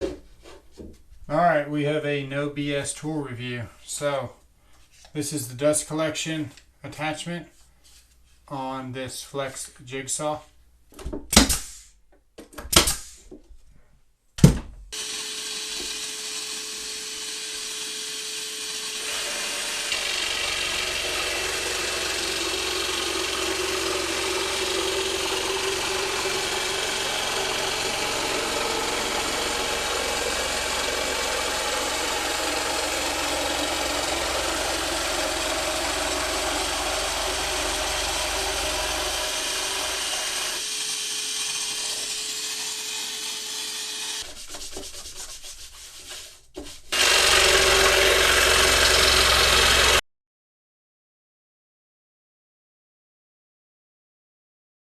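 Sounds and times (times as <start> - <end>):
jigsaw cutting wood: 14.9 - 44.3, 46.9 - 50.0.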